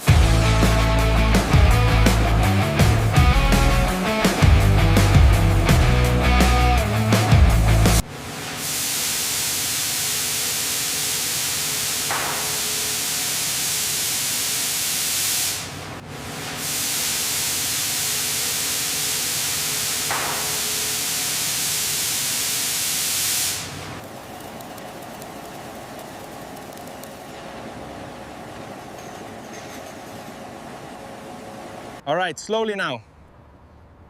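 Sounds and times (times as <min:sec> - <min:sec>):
hissing jet of spraying air: 0:08.6 - 0:15.8, 0:16.6 - 0:23.9.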